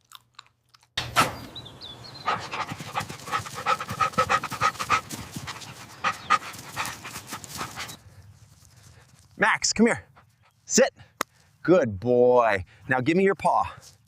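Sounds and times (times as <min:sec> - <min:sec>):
dog panting: 0:02.0 - 0:08.0.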